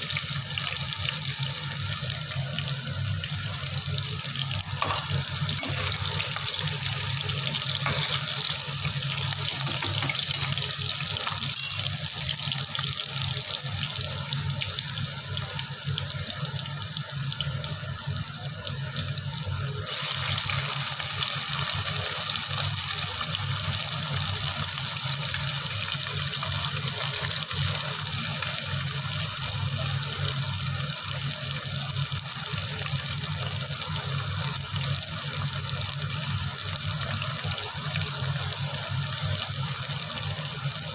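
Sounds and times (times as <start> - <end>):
water running from a tap: 0.0 - 40.9.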